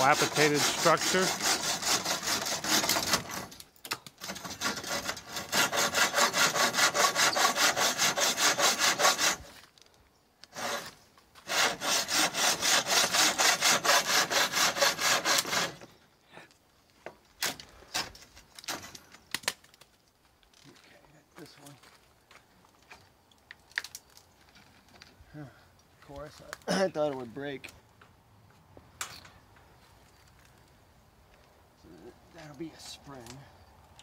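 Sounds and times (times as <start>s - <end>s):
hand saw cutting wood: 0.0s - 3.6s, 4.2s - 9.6s, 10.4s - 15.9s, 17.5s - 19.0s.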